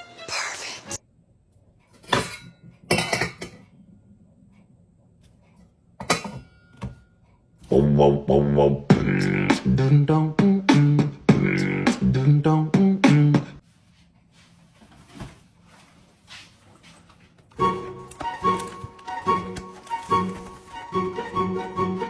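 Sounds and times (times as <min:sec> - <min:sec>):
beatbox-like vocal music: 0:07.7 - 0:13.6.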